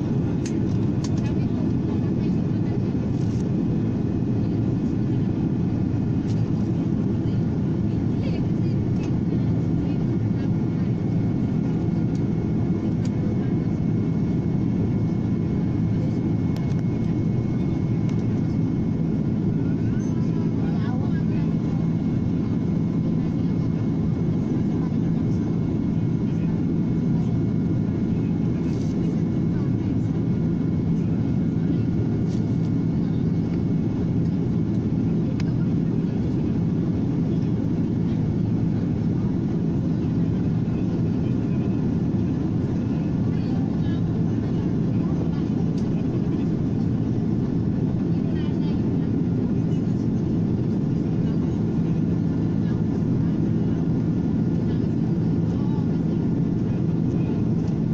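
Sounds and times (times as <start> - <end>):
airliner cabin engine drone: 0.0 - 57.9.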